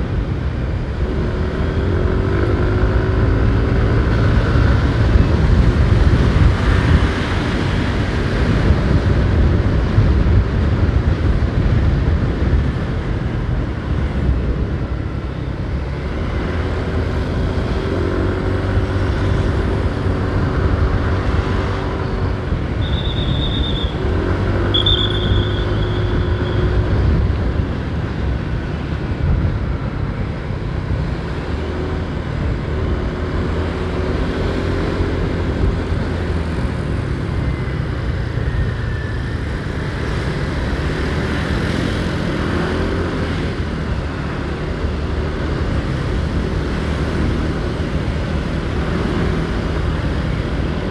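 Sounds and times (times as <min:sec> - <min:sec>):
vehicles passing: 0:00.0 - 0:50.9
wind rumble: 0:00.0 - 0:50.9
motorcycle engine: 0:12.5 - 0:50.9
short high-pitched tones: 0:24.7 - 0:26.7.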